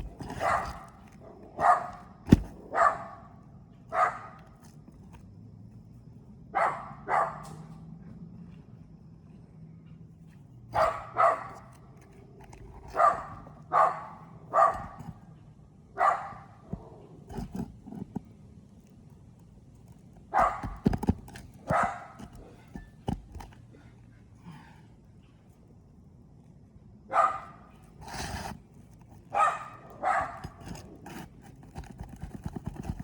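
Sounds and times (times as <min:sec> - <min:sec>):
dog barking: 0:00.3 - 0:03.3, 0:03.9 - 0:04.4, 0:06.5 - 0:07.6, 0:10.7 - 0:11.8, 0:12.9 - 0:15.0, 0:16.0 - 0:17.0, 0:20.3 - 0:20.8, 0:21.7 - 0:22.6, 0:27.1 - 0:27.7, 0:29.3 - 0:30.6.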